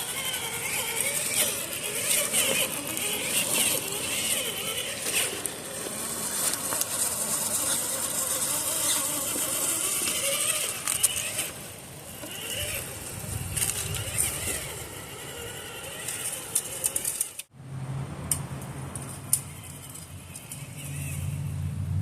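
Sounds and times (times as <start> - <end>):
electric motor whine: 0.0 - 17.5.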